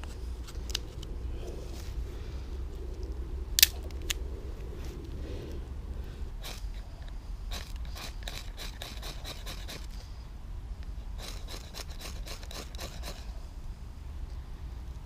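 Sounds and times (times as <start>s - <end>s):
steady low rumble: 0.0s - 11.2s, 13.2s - 15.0s
quick short scraping strokes: 6.4s - 6.9s, 7.5s - 10.0s, 11.2s - 13.3s.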